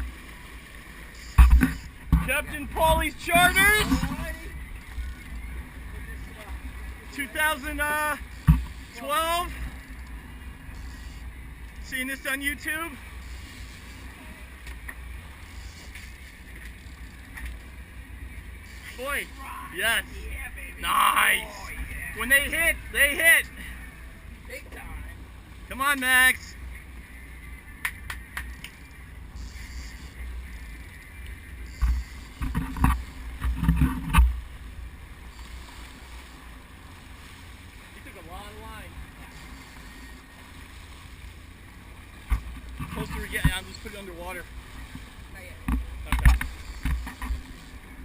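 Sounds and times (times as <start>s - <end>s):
boat engine rumble and hiss: 0.0s - 48.0s
faint clicks: 15.6s - 17.7s, 27.8s - 28.9s, 30.8s - 34.3s.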